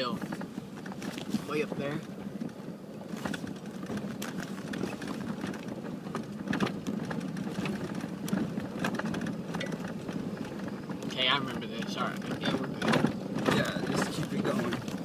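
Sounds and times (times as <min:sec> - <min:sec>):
off-road vehicle engine running: 0:00.0 - 0:15.0
knocks and rattles from jolts: 0:03.2 - 0:15.0.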